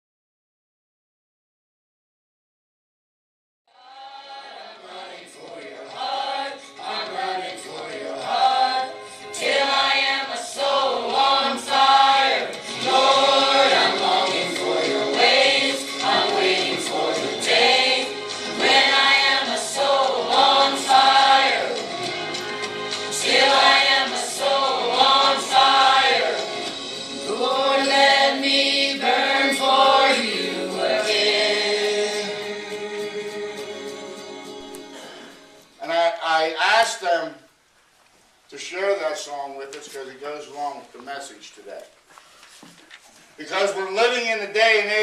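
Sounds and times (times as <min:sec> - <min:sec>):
church choir singing: 0:03.7 - 0:35.4.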